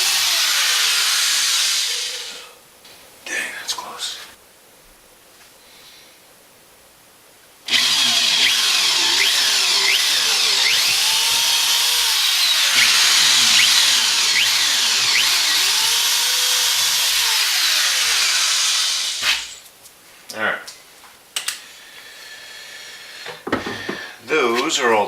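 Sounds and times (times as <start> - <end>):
electric drill boring into wood: 0.0 - 2.4, 7.7 - 19.6.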